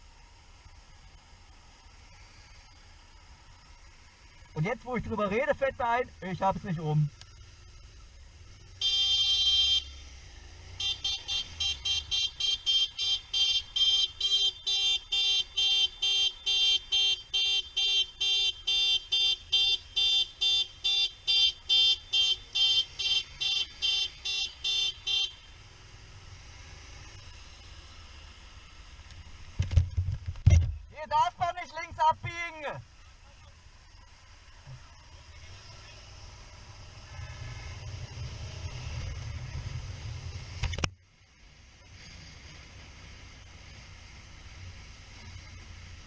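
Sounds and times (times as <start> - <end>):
vehicle horn toots: 8.8 - 9.9, 10.8 - 25.5.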